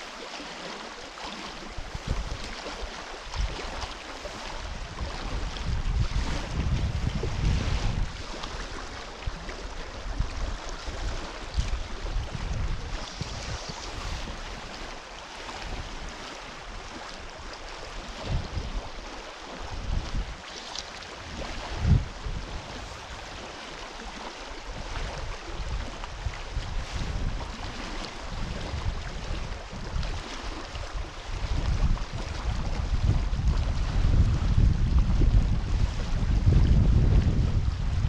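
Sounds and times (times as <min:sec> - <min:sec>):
river water rushing: 0:00.0 - 0:34.2
wind buffeting microphone: 0:01.6 - 0:38.0.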